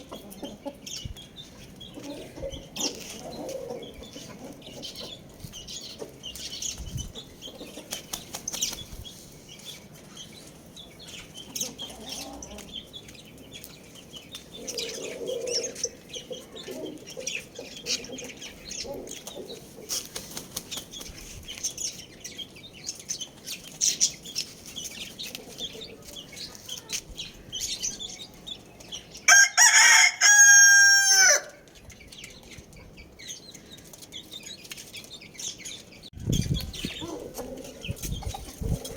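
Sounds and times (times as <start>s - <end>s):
chickens scratching and rustling: 0.0s - 30.0s, 31.4s - 38.9s
chickens clucking: 0.0s - 34.5s, 35.5s - 38.9s
rooster crowing: 29.3s - 31.6s.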